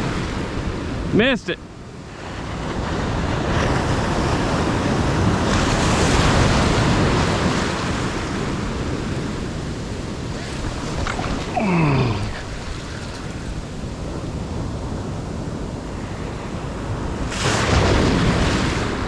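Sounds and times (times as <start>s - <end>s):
ocean surf washing on beach: 0.0s - 19.0s
wind buffeting microphone: 2.0s - 19.0s.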